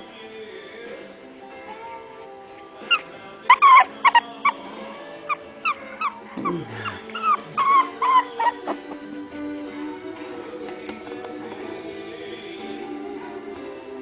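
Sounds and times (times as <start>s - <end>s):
background music: 0.0s - 14.0s
puppy whimpering: 2.9s - 9.1s.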